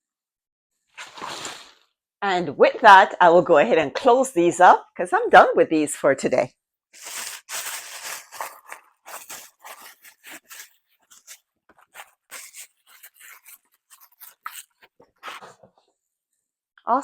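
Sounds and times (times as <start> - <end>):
packaging rustling and crinkling: 1.0 - 1.8, 7.0 - 15.7.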